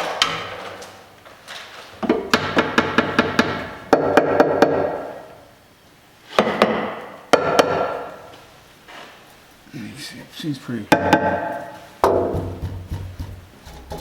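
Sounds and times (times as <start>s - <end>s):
sharp metallic knocks on suspension: 10.9s - 14.0s.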